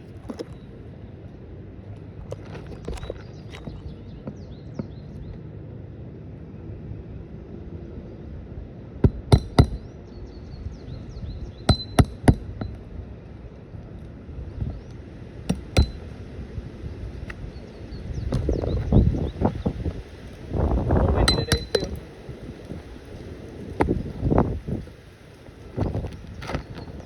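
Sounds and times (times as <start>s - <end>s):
hammer striking metal: 9.1s - 9.8s, 11.7s - 12.6s, 15.5s - 16.1s, 21.3s - 22.0s.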